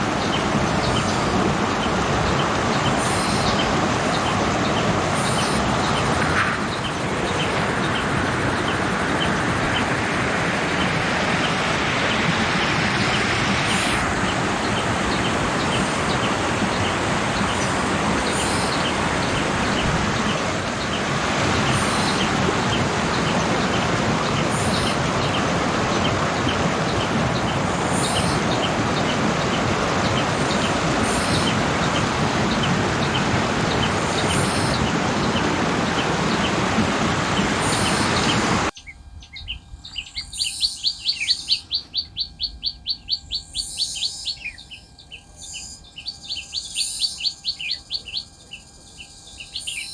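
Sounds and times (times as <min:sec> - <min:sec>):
waterfall rushing: 0:00.0 - 0:38.7
high bird chirps: 0:00.2 - 0:09.8, 0:37.6 - 0:49.9.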